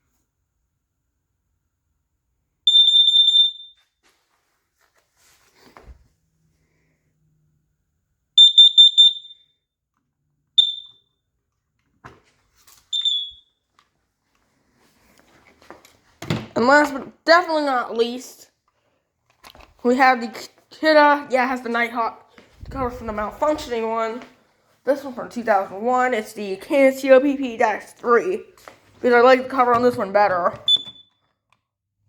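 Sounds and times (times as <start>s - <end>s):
high-pitched alarm beeping: 2.7s - 3.8s, 8.4s - 9.5s, 10.6s - 11.0s, 12.9s - 13.4s.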